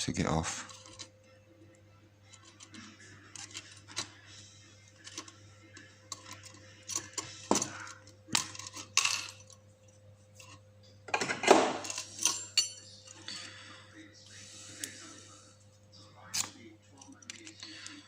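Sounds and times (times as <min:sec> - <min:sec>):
metal lock picks clinking: 0:11.8 - 0:12.9.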